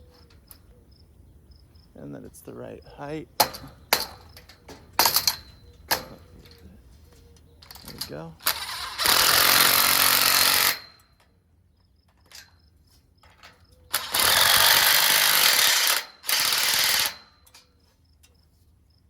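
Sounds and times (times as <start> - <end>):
impact driver bursts: 8.4 - 11.0, 13.9 - 17.4.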